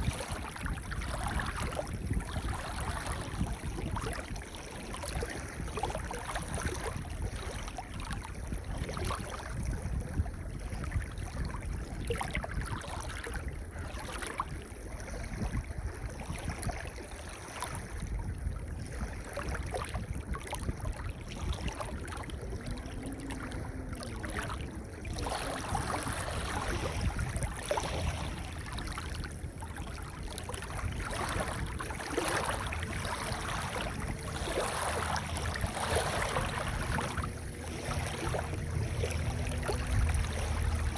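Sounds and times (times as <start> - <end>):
surf rumbling: 20.7 - 40.9
waves washing on pebbles: 23.0 - 40.9.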